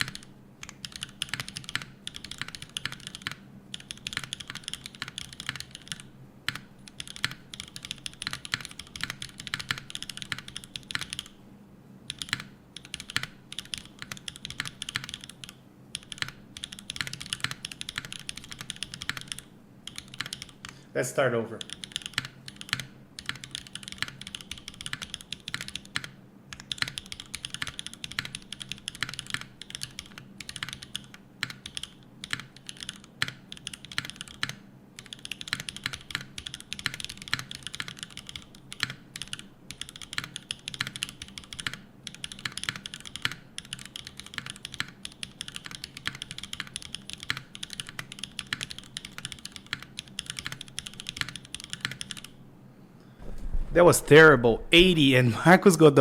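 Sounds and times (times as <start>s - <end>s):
mechanical keyboard typing: 0.0s - 11.4s, 12.1s - 20.8s, 21.6s - 52.3s.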